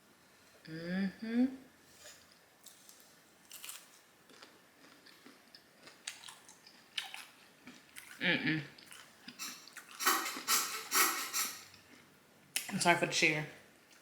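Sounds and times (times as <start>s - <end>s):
woman chewing food: 2.2s - 12.1s.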